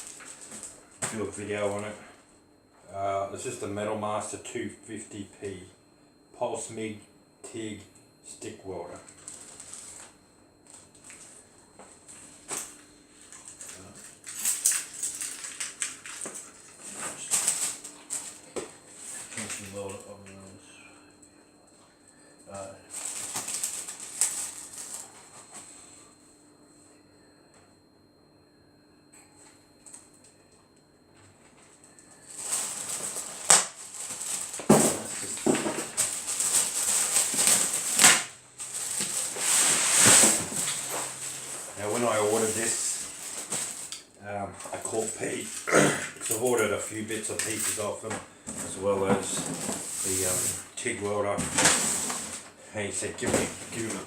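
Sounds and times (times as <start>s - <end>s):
packaging crinkling and rustling: 0.0s - 1.2s, 9.1s - 18.6s, 22.9s - 25.5s, 32.1s - 44.1s, 48.7s - 50.6s, 51.4s - 54.0s.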